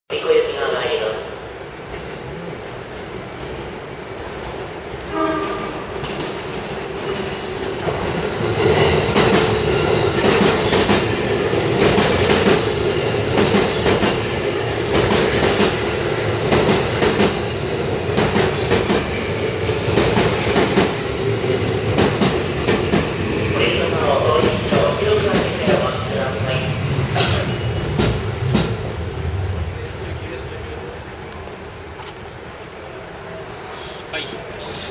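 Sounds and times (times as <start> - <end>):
train running hum: 0.1 - 34.9
train horn blast: 5.0 - 6.0
train wheels clacking over rail joints: 5.1 - 21.1, 21.8 - 23.2, 27.2 - 28.9.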